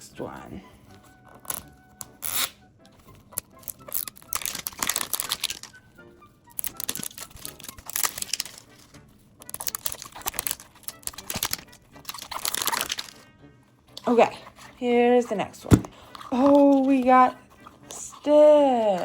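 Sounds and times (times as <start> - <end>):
quiet background music: 0.0 - 19.0
plastic packaging crinkling and tearing: 1.0 - 5.8, 6.5 - 13.2, 15.7 - 19.0.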